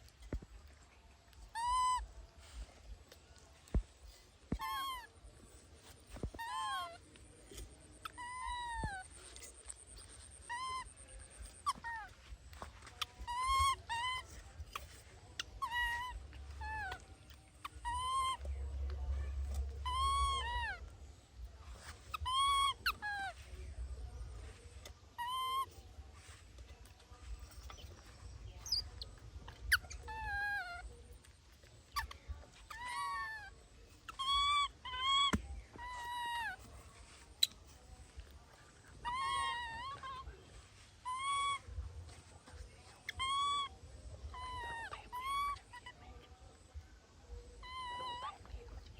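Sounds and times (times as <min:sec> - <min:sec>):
baby monkey squealing: 0:01.4 - 0:02.1, 0:04.5 - 0:05.1, 0:06.2 - 0:20.9, 0:21.8 - 0:23.4, 0:24.9 - 0:25.8, 0:27.4 - 0:30.9, 0:31.6 - 0:37.6, 0:39.0 - 0:40.3, 0:41.0 - 0:41.7, 0:43.0 - 0:46.0, 0:47.6 - 0:48.5.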